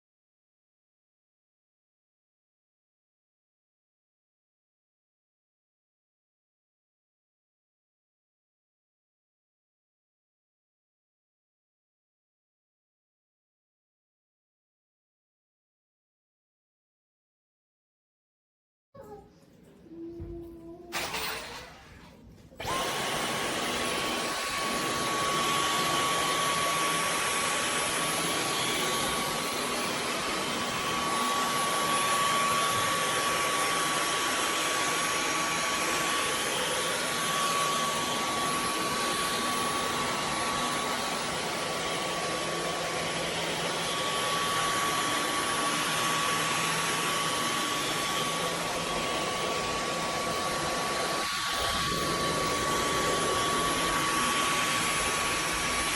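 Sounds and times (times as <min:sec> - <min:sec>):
vacuum cleaner motor whine: 0:22.3 - 0:55.9.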